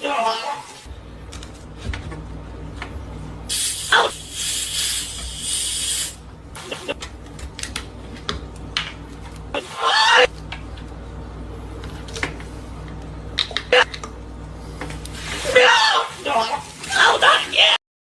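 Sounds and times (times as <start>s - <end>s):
soda hissing and spraying: 3.5s - 6.2s.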